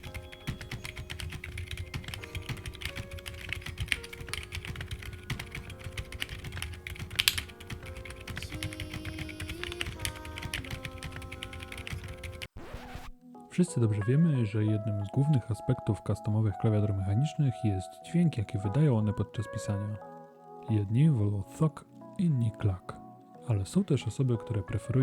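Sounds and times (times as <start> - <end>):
background music with held notes: 0.0 - 12.5, 13.1 - 25.0
mechanical keyboard typing: 0.0 - 12.5.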